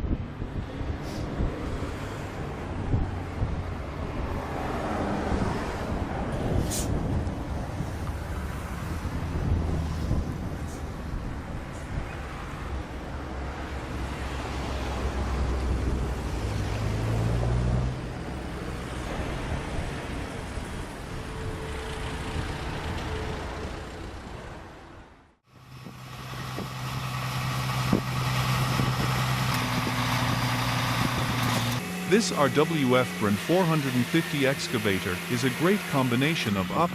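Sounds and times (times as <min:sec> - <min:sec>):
heavy diesel machinery running: 0:25.5 - 0:36.9
machine engine running steadily: 0:25.5 - 0:36.9.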